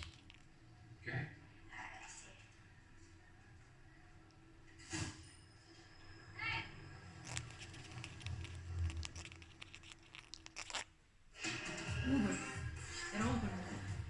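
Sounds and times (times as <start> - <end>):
cockatoo scratchy clicks: 0.0 - 0.6, 7.1 - 10.9.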